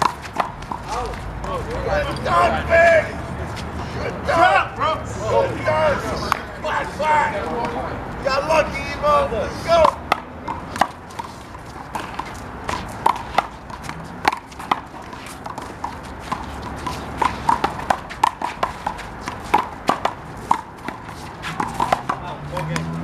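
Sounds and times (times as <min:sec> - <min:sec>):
handball smacking wall and pavement: 0:00.0 - 0:01.9, 0:09.7 - 0:23.0.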